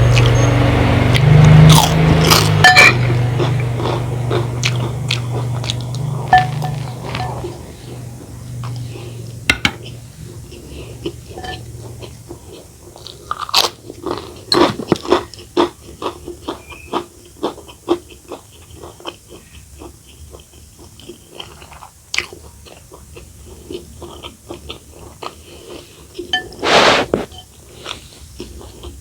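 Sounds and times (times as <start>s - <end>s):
person chewing crunchy food: 0.0s - 29.0s.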